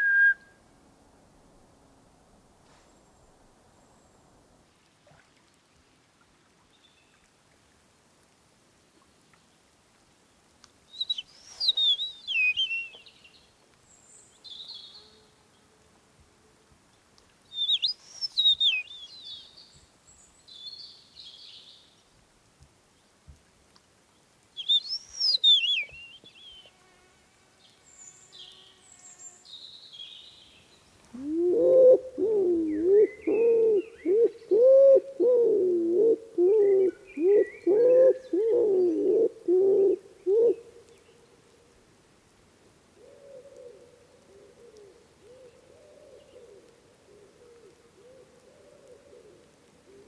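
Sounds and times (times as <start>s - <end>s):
small birds chirping: 10.9s - 13.4s, 17.5s - 21.8s, 24.6s - 26.8s
low wavering hoot-like calls: 31.1s - 40.8s.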